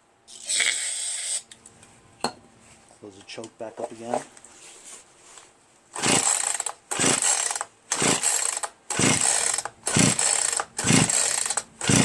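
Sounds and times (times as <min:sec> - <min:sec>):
chainsaw starter cord pulls: 0:06.0 - 0:12.0.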